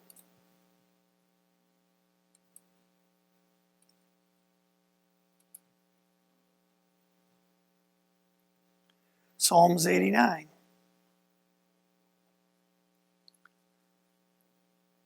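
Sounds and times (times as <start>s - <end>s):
faint steady hum: 0.0s - 15.0s
small clicks: 0.1s - 0.3s, 2.3s - 2.7s, 3.8s - 4.0s, 5.4s - 5.7s, 13.2s - 13.6s.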